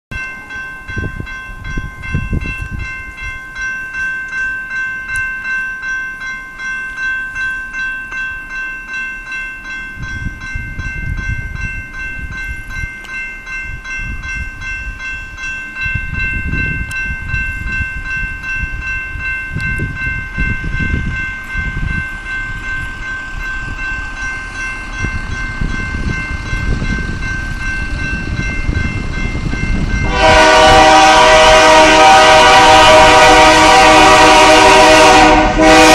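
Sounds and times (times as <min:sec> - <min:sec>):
crossing bell ringing: 0:00.1 - 0:35.9
freight train rumble: 0:00.1 - 0:35.9
locomotive air horn: 0:30.0 - 0:35.9.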